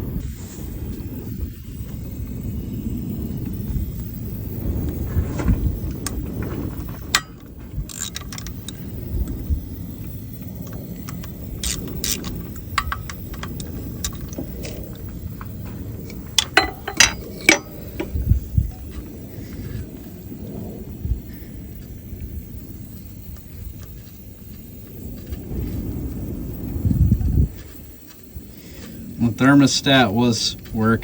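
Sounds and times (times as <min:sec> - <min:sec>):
steady low rumble: 0:00.0 - 0:31.0
hand tools clinking on metal: 0:11.1 - 0:19.0.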